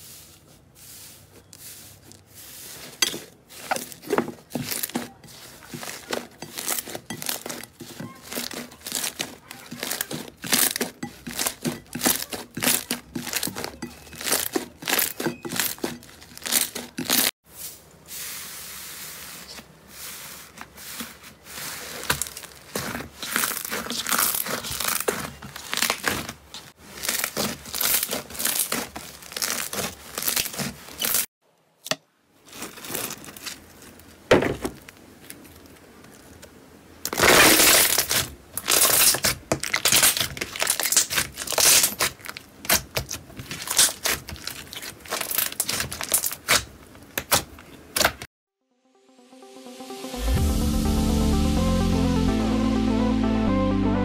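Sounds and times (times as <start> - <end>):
slime squelching and crackling: 2.0 - 17.4, 21.4 - 31.3, 37.1 - 48.1.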